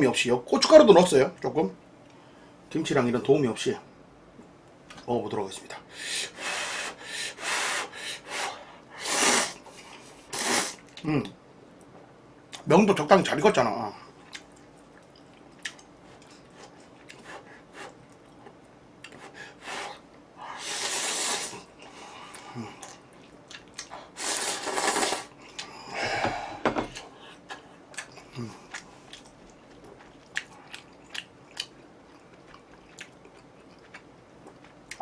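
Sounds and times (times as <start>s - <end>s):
slurping noodles: 6.3s - 9.6s, 10.3s - 10.8s, 20.6s - 21.7s, 24.1s - 25.4s
chewing: 14.2s - 19.3s, 22.3s - 24.1s, 27.4s - 35.0s.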